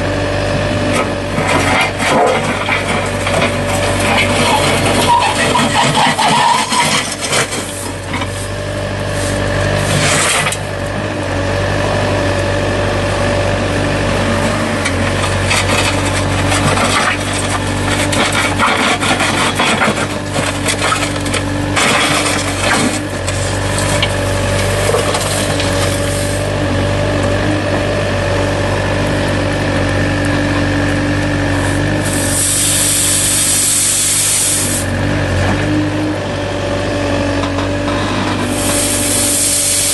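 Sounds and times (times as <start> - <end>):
machine engine running: 0.0 - 39.9
scraping and rubbing: 1.5 - 10.5, 15.4 - 26.4
loud hiss burst: 32.0 - 34.8, 38.5 - 39.9.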